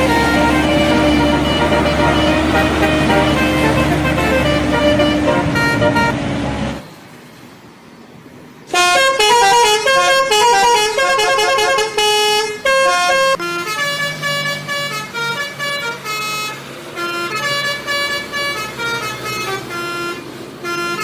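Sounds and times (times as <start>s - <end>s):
tuned air horns playing melody: 0.0s - 6.8s, 8.7s - 21.0s
loud noisy vehicle: 0.0s - 21.0s.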